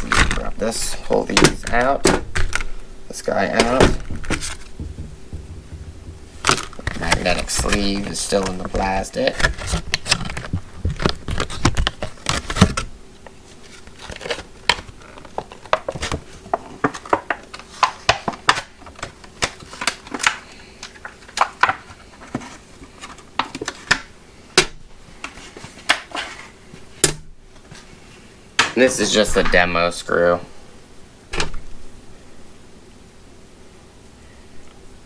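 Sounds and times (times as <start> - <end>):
plastic packaging crinkling: 6.4 - 12.9, 13.5 - 22.2.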